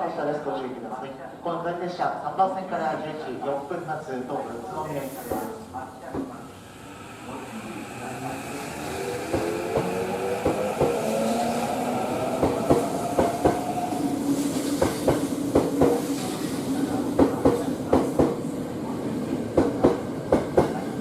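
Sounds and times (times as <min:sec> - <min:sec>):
electric train motors whining: 0:06.6 - 0:14.2
train wheels clacking over rail joints: 0:09.2 - 0:11.5, 0:12.3 - 0:13.7, 0:14.6 - 0:16.4.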